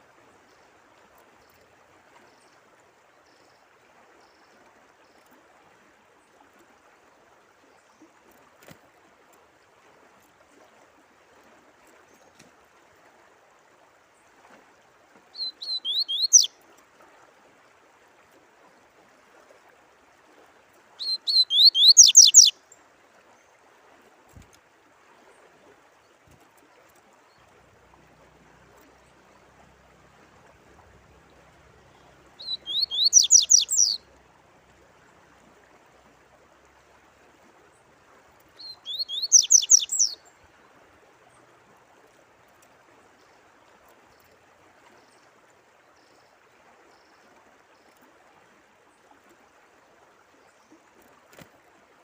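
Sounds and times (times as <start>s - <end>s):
faint running water: 0.0s - 52.0s
songbird singing: 15.3s - 16.6s, 21.0s - 22.6s, 30.7s - 34.2s, 38.5s - 40.6s.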